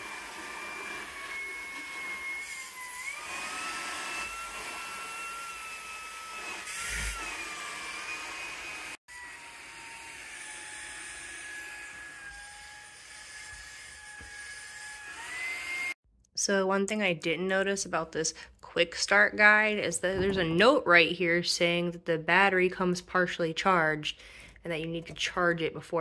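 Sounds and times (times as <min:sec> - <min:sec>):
stick vacuum motor whine: 0:00.0 - 0:16.0.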